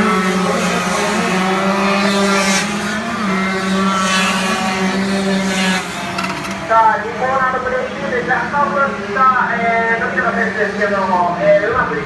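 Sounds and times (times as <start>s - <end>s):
racing engine at high revs: 0.0s - 9.2s.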